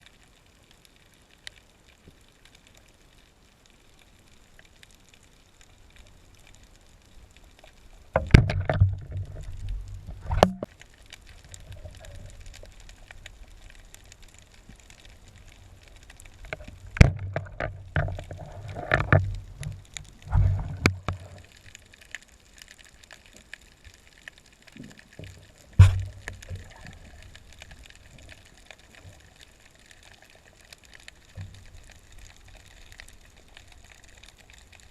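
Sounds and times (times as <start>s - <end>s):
water sloshing and gurgling: 6.0s - 22.0s, 23.2s - 34.9s
sharp knocks and clicks: 8.2s - 9.5s, 10.1s - 10.7s, 16.5s - 19.7s, 25.8s - 26.6s.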